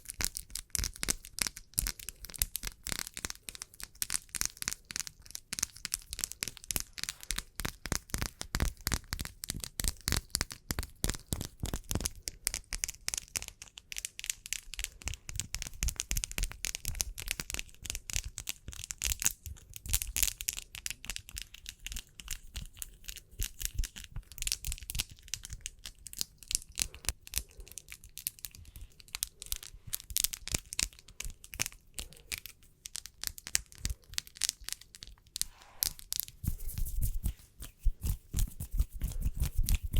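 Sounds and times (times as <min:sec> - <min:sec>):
hands rubbing: 0:30.8 - 0:39.9.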